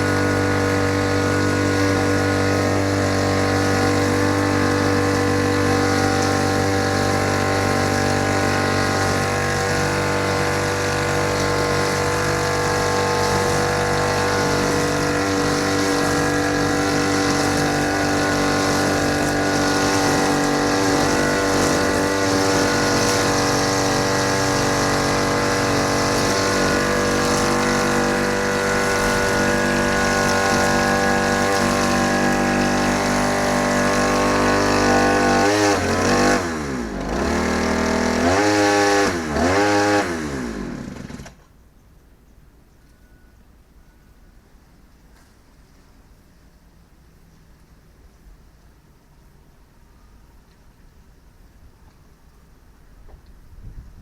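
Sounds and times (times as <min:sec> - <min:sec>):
lawn mower engine running: 0:00.0 - 0:41.5.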